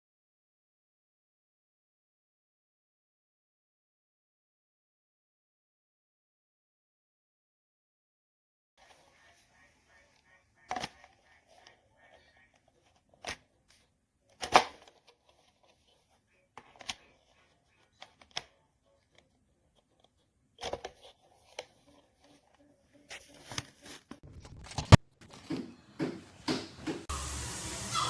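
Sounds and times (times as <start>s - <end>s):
plastic parts clicking and knocking: 10.6s - 11.8s, 12.8s - 15.9s, 19.9s - 22.6s
hair dryer rushing with hum: 26.8s - 28.0s.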